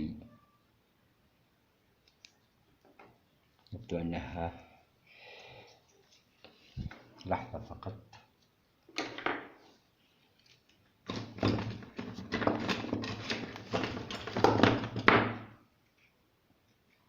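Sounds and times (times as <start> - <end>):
hard parts knocking and clattering: 11.1 - 15.5.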